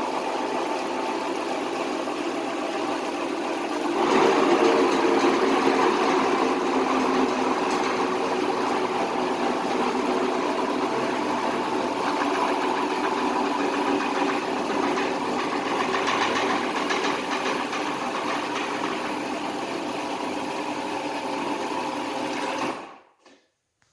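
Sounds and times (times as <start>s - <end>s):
car lift motor humming: 3.8s - 22.9s
spindle rattling: 4.1s - 19.3s.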